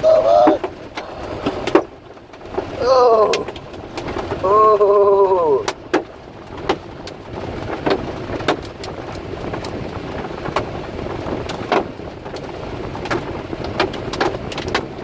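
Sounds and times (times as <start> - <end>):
storm rushing noise: 0.8 - 4.5
hailstones striking metal: 5.6 - 15.0.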